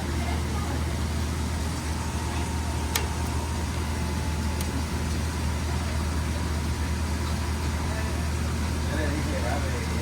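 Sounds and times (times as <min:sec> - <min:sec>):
faint steady whine: 0:00.0 - 0:10.0
refrigeration equipment humming: 0:00.0 - 0:10.0.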